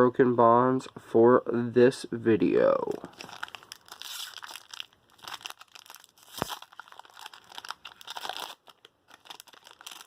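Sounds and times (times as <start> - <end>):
foil wrapper tearing and crinkling: 3.0 - 10.0.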